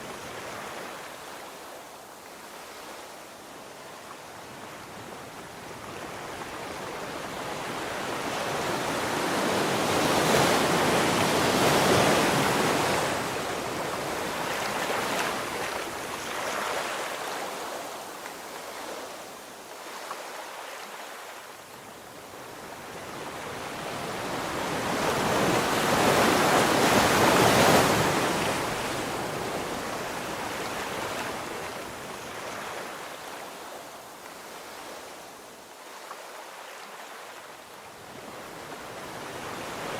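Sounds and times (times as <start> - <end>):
sea waves washing on shore: 0.0 - 39.9.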